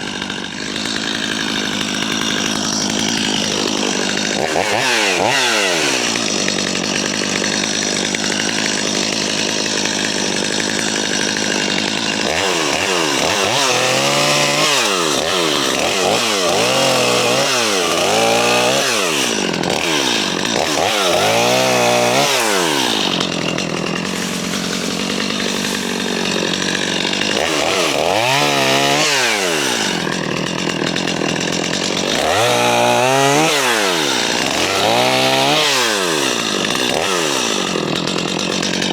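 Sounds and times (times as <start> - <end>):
excavator diesel engine under load: 21.9 - 32.4.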